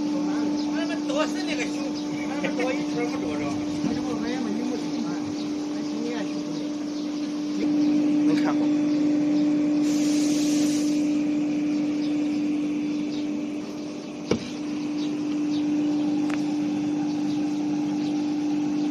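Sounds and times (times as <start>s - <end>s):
router spindle humming: 0.0s - 18.9s
machine hiss: 9.7s - 11.3s.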